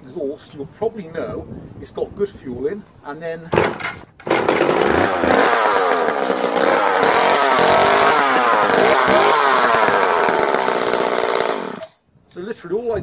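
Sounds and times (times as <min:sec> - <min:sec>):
starter cord pull: 0:03.6 - 0:11.9
chainsaw engine running: 0:04.2 - 0:12.0.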